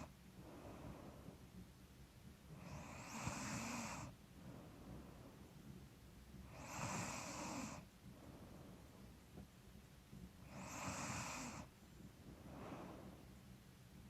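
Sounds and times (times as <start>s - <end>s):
soft snoring: 0.0s - 1.4s, 2.5s - 5.4s, 6.4s - 7.9s, 10.4s - 11.7s
woman breathing heavily: 0.4s - 1.5s, 11.1s - 13.4s.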